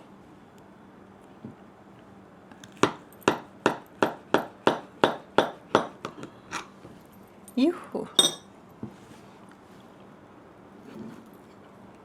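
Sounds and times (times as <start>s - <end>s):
knife clinking on dish: 8.2s - 8.5s.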